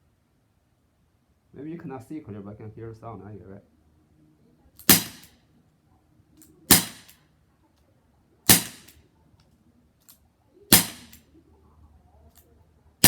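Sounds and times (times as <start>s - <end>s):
air gun shots: 4.8s - 5.3s, 6.7s - 7.2s, 8.5s - 9.0s, 10.7s - 11.2s.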